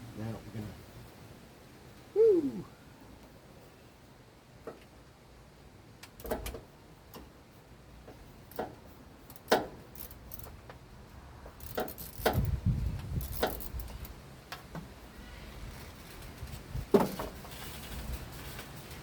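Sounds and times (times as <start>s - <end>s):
metallic clicks of hand tools: 8.5s - 10.6s, 11.6s - 14.2s
scraping and rustling: 15.2s - 19.0s.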